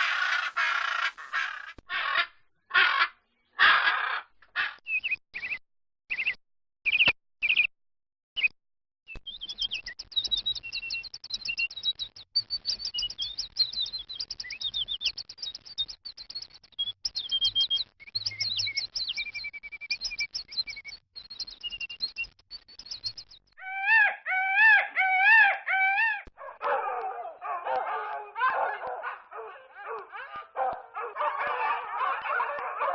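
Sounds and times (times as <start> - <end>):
short bird calls: 0.0 - 2.2
wavering bird call: 0.0 - 2.2, 23.6 - 32.9
birds twittering chorus: 0.0 - 7.7, 16.6 - 22.2, 22.8 - 32.9.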